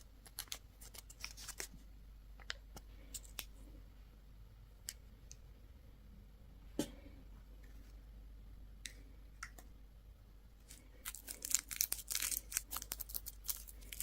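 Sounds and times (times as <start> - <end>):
packaging crinkling and clicking: 11.1 - 14.0.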